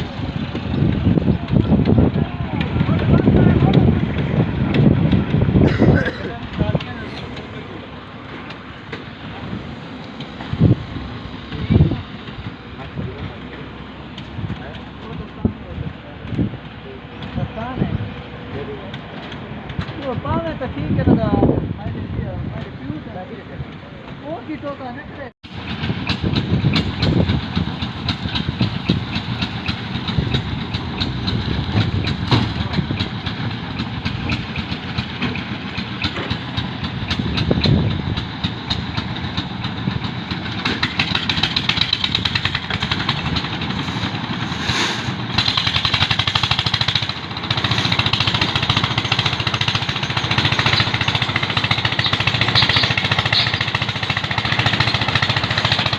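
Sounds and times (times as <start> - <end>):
construction machine engine rattling: 0.0 - 55.9.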